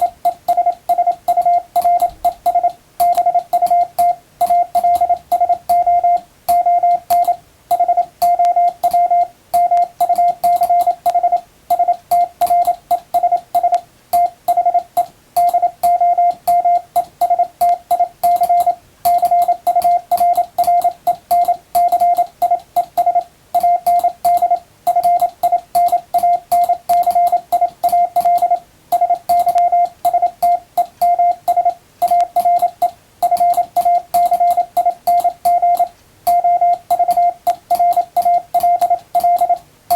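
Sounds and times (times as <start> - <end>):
morse code tone: 0.0 - 39.6
thin clicks: 15.0 - 39.7.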